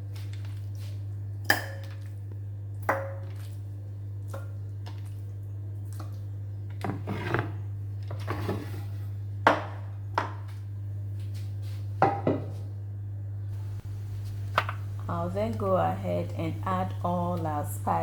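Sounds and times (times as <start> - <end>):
steady low hum: 0.0 - 18.0.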